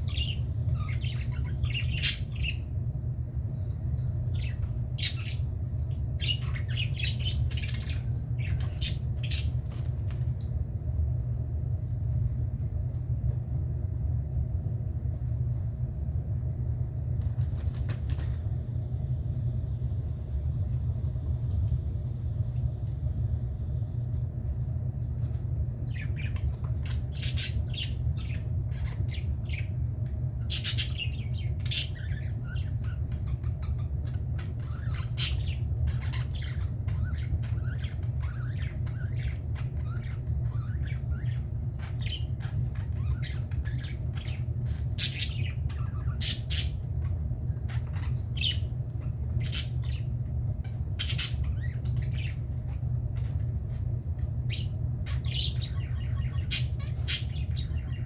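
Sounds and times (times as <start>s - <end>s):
budgerigars chirping and squawking: 0.0s - 2.8s, 4.1s - 10.2s, 25.7s - 58.0s.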